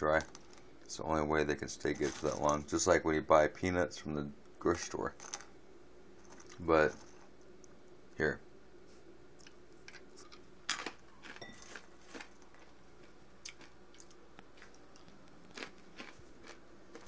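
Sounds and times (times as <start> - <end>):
person chewing crunchy food: 9.4 - 17.0.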